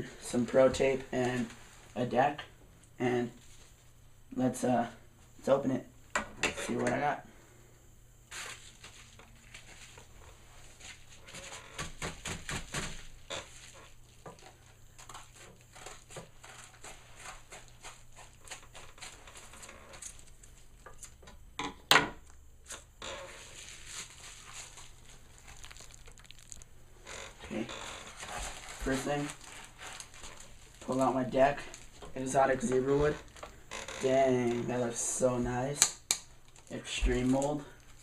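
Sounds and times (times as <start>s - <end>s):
packaging rustling and tearing: 8.3s - 21.2s, 22.7s - 33.6s.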